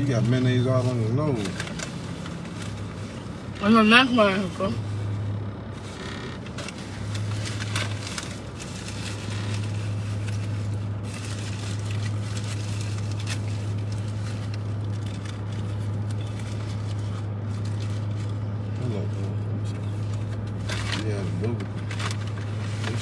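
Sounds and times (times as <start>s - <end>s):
food wrappers crackling: 0.0s - 23.0s
steady low hum: 0.0s - 23.0s.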